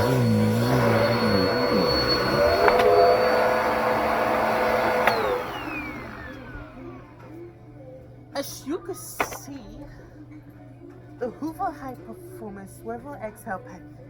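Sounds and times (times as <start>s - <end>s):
motor spinning down: 0.0s - 7.2s
vacuum cleaner whine: 0.0s - 7.5s
vacuum switch click: 0.8s - 6.7s.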